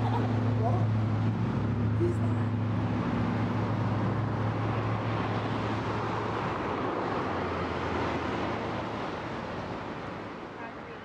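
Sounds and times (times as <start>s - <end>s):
vehicle engine low hum: 0.0s - 9.1s
road traffic noise: 0.0s - 11.0s.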